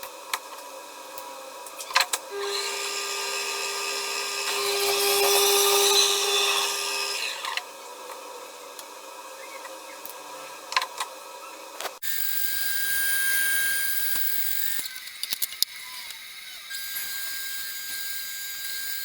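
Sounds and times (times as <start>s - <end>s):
power tool motor whining: 2.3s - 7.7s, 12.0s - 19.0s.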